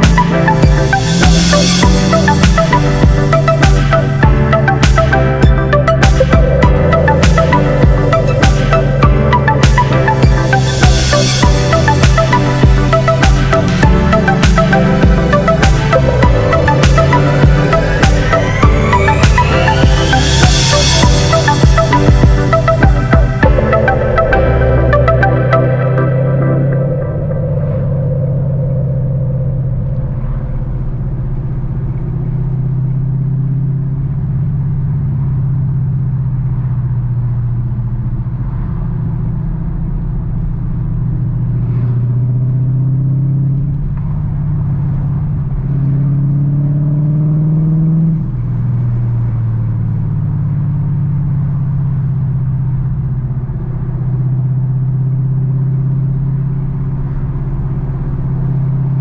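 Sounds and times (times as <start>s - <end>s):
car engine accelerating: 0.0s - 59.0s.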